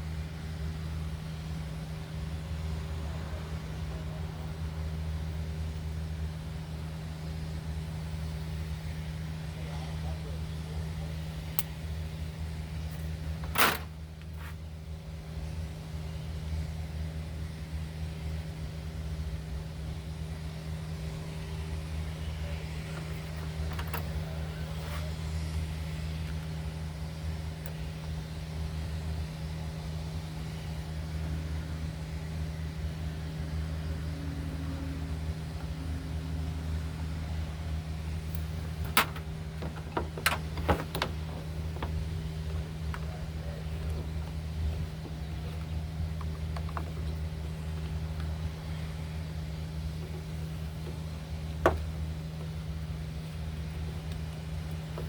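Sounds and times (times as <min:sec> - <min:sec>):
steady low hum: 0:00.0 - 0:55.0
sharp clicks and knocks: 0:38.8 - 0:43.1.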